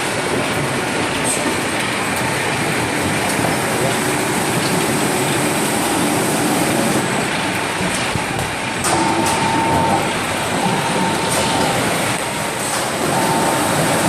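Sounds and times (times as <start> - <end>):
lathe mechanical noise: 2.4 - 14.0.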